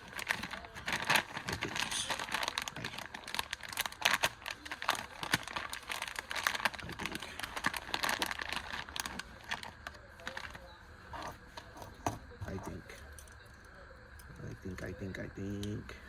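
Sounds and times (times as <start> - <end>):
quick clicks and crackles: 0.0 - 12.1
crinkling and rustling items: 0.0 - 14.5.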